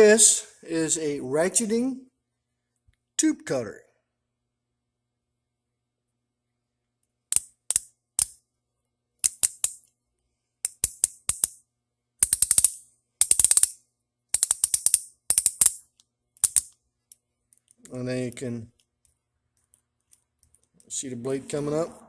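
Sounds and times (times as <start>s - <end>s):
ratchet tube cutter clicking: 7.3s - 8.4s, 9.2s - 9.9s, 10.6s - 11.6s, 12.2s - 16.8s.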